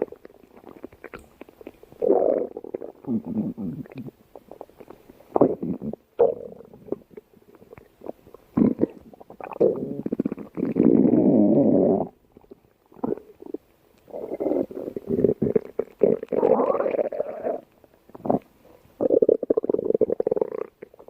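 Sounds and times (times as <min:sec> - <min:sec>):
stomach growling: 0:00.0 - 0:21.0.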